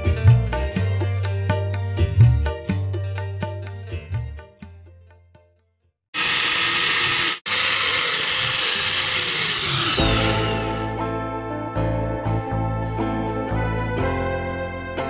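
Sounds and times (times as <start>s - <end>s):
music: 0.0s - 6.0s, 10.0s - 15.0s.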